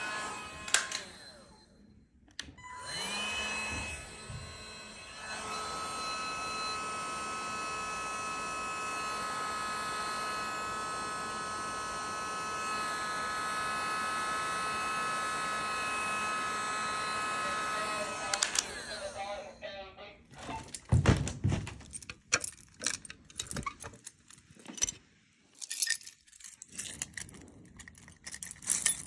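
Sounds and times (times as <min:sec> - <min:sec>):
click: 0:02.3 - 0:02.6, 0:18.3 - 0:18.7.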